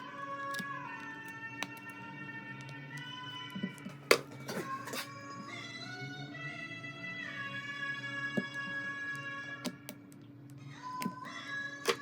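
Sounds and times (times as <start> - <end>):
background music with held tones: 0.0 - 12.0
brief scraping noise: 4.1 - 5.1.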